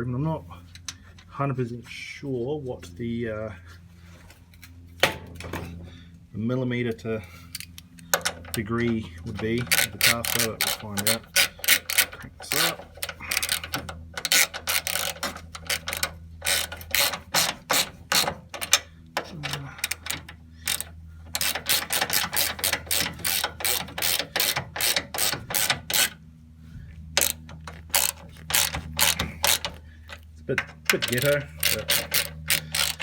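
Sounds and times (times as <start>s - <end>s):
ratchet wrench clicking: 9.3s - 26.2s, 27.2s - 33.0s.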